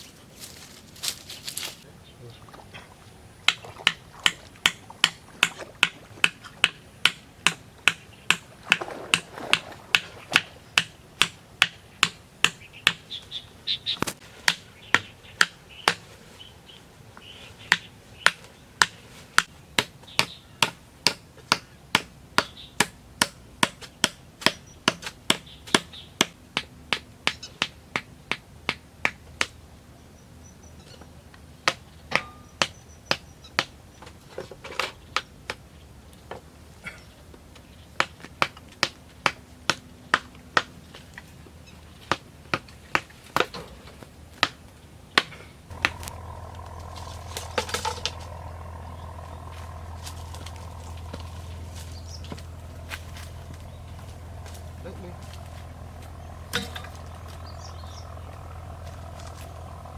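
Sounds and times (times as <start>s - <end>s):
tool striking bamboo: 3.5s - 13.0s, 14.0s - 16.1s, 17.7s - 29.6s, 31.6s - 33.7s, 45.2s - 57.4s.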